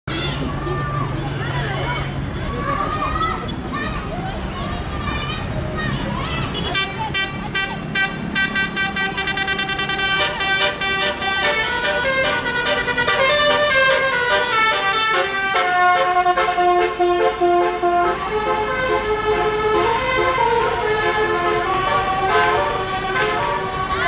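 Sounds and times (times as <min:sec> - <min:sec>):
multi-tone musical bus horn: 0:06.5 - 0:24.0.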